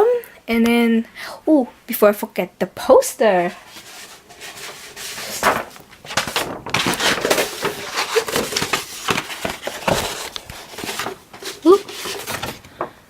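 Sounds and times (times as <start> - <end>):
paper poster rustling and crackling: 3.2 - 13.0.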